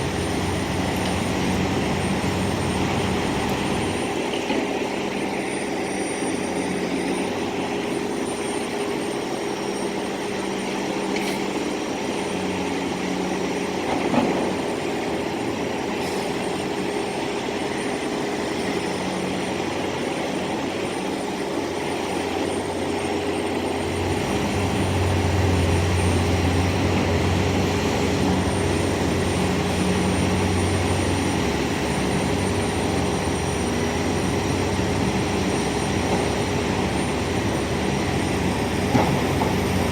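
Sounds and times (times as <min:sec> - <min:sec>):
machinery engines droning: 0:00.0 - 0:39.9.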